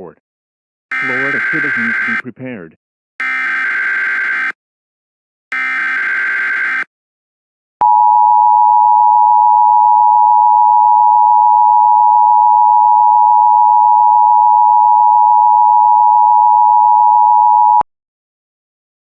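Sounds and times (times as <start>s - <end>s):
two-tone electronic alert signal: 0.9s - 2.2s.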